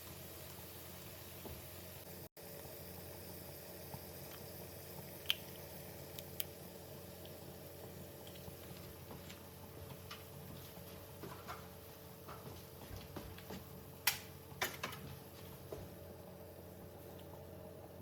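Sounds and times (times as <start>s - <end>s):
sauce popping in a pan: 0.0s - 11.2s
faint hum: 0.0s - 18.0s.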